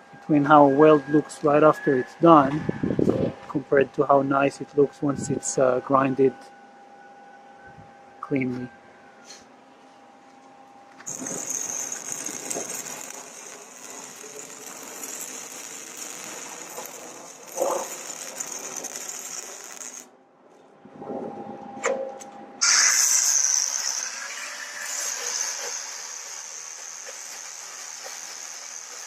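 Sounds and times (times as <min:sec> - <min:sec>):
power grinder grinding metal: 0:11.1 - 0:20.1, 0:22.6 - 0:29.0.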